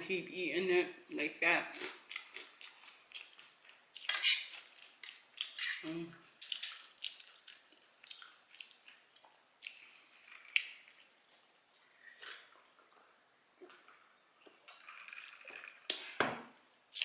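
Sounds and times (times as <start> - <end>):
wet chewing and lip smacks: 1.8 - 12.8.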